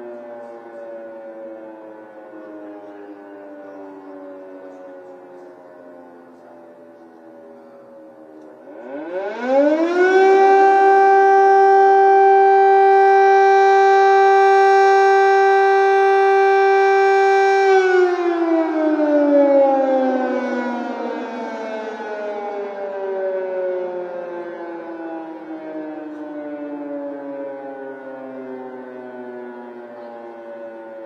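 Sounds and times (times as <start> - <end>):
air raid siren wailing: 0.0 - 31.0.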